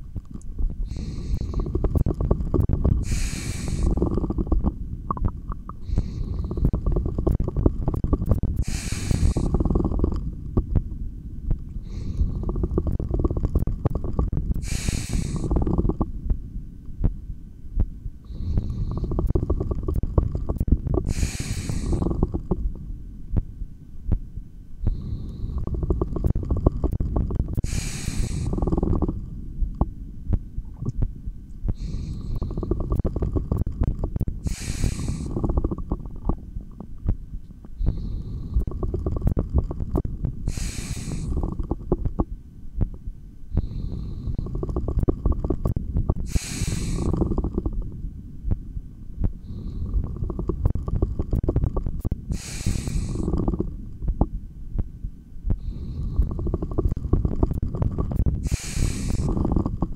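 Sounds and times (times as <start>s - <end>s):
stomach growling: 0.0s - 16.4s, 17.8s - 23.5s, 24.8s - 48.6s, 49.2s - 54.9s, 55.5s - 59.9s
deep breathing through stethoscope: 0.8s - 4.7s, 5.8s - 10.3s, 11.8s - 16.1s, 18.2s - 22.6s, 24.8s - 29.3s, 31.6s - 36.4s, 37.7s - 42.0s, 43.5s - 47.9s, 49.2s - 53.8s, 55.5s - 59.9s.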